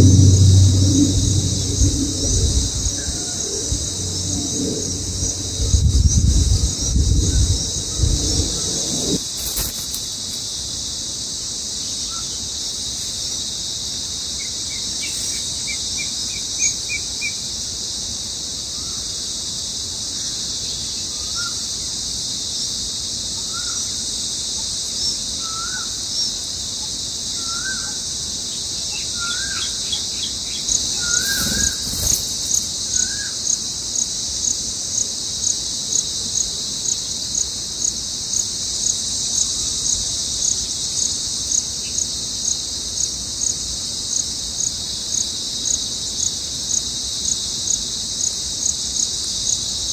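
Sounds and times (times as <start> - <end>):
insects chorus: 0.0 - 49.9
birds calling: 29.0 - 33.2.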